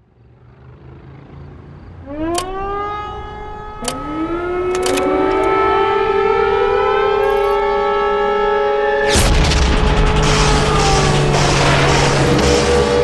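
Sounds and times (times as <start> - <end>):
sharp clicks: 2.2 - 12.5.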